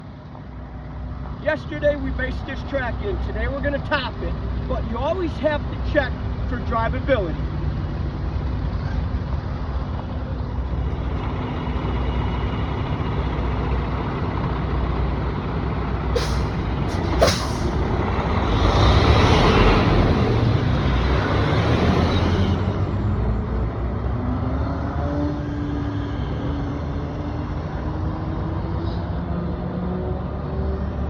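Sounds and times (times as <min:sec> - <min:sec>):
diesel truck running: 0:00.0 - 0:24.0
air brake hisses: 0:16.2 - 0:18.0.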